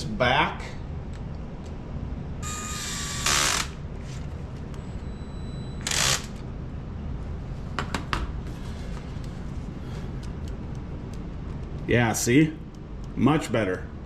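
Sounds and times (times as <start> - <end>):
electric screwdriver whirring: 2.4 - 3.8, 5.8 - 6.4.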